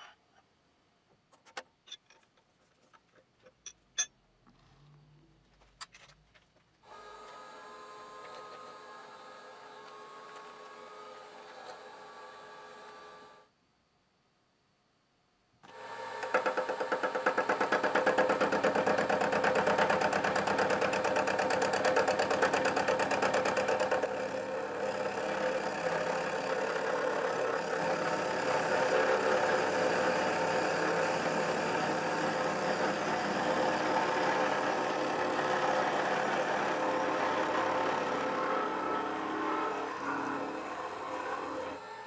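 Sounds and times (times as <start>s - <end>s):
machine tool motor drone: 15.7s - 42.0s.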